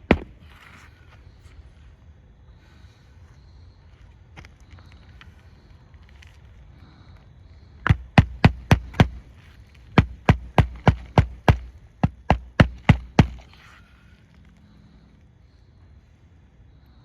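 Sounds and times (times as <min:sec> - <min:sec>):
hammer striking roofing nails: 0:00.0 - 0:00.4, 0:07.8 - 0:09.3, 0:09.9 - 0:13.6.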